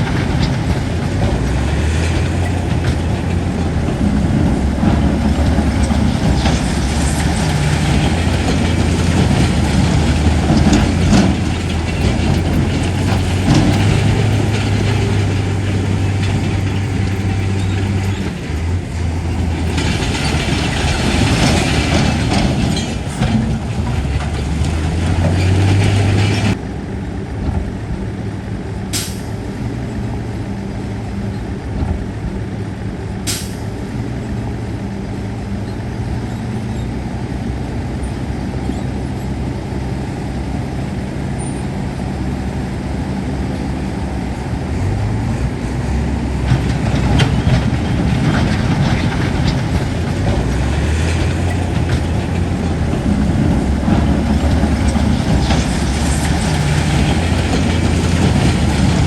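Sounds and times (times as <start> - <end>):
machinery clatter: 0.0 - 26.7, 45.6 - 59.0
diesel earthmoving machinery: 0.0 - 59.0.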